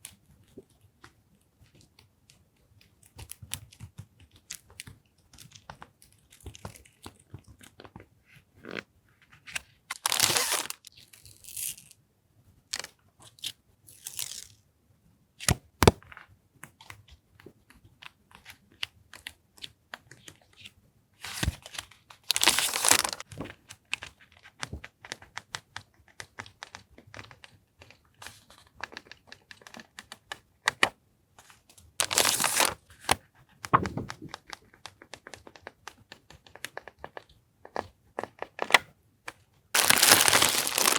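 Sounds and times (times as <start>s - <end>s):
packaging crinkling and tearing: 9.9s - 11.9s, 22.3s - 23.2s, 32.0s - 33.2s, 39.8s - 40.9s.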